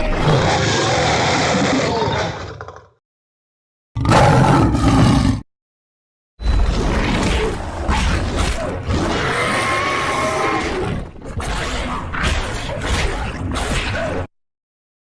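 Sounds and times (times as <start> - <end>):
harsh rasping creature growl: 0.0 - 3.0, 4.0 - 5.5, 7.2 - 11.1.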